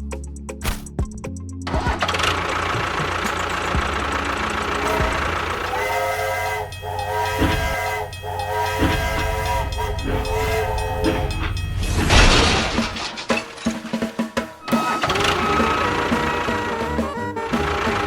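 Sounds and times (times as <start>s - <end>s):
multi-note horn blasts: 2.2s - 13.0s, 14.7s - 18.0s.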